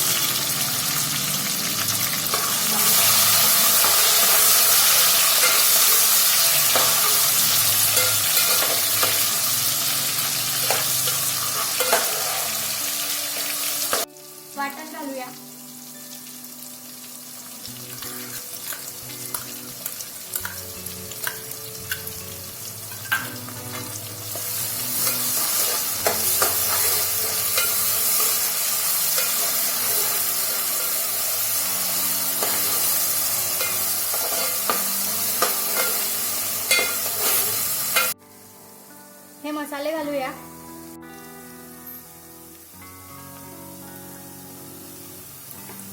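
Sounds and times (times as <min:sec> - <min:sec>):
paste sizzling in oil: 0:00.0 - 0:38.8, 0:43.7 - 0:45.9
spoon scraping a pan: 0:02.3 - 0:09.6, 0:10.2 - 0:14.0, 0:22.9 - 0:31.5, 0:32.2 - 0:38.1.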